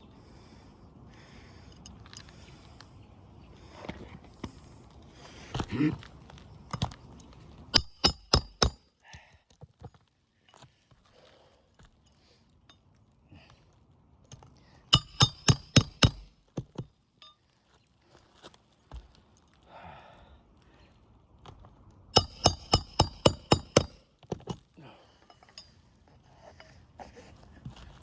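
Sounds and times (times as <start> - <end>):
hammer striking nails: 7.8 - 9.0, 15.0 - 16.9, 22.2 - 24.6.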